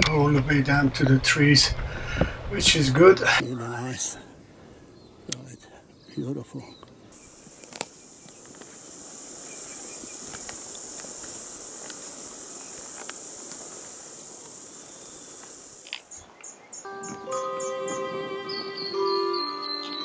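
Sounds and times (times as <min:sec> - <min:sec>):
insects chirring: 0:04.9 - 0:20.0
background music: 0:16.9 - 0:20.0.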